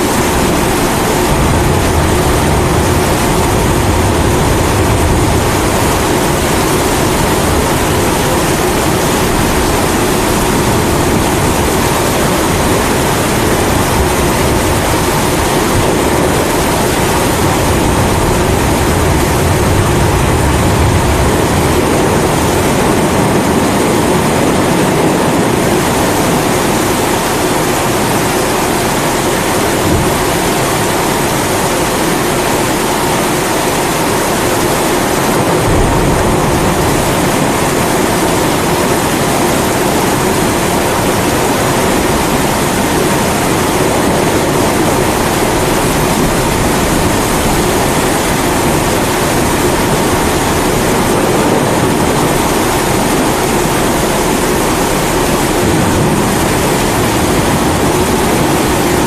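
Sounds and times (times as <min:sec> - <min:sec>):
steady rain: 0:00.0 - 0:59.0
deep low rumble: 0:00.1 - 0:23.4, 0:35.3 - 0:38.4.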